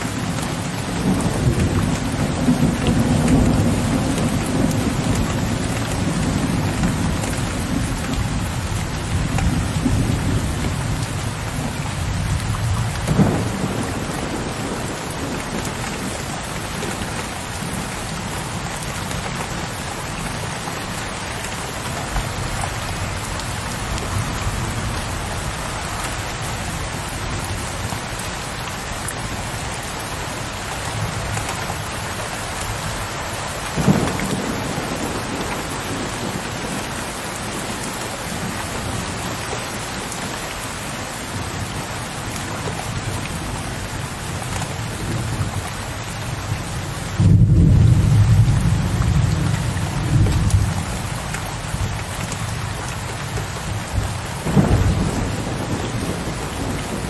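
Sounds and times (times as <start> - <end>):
rain pattering on window ledge: 0.0 - 57.0
low rolling thunder: 0.1 - 18.0, 33.7 - 39.2, 46.3 - 57.0.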